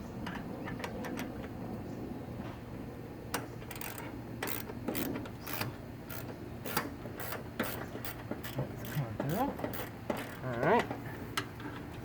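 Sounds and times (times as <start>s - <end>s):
socket wrench clicking: 3.7s - 10.4s.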